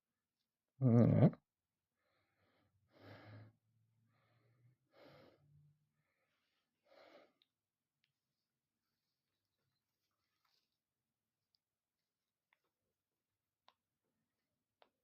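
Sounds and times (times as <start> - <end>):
soft breathing close up: 2.0 - 7.6.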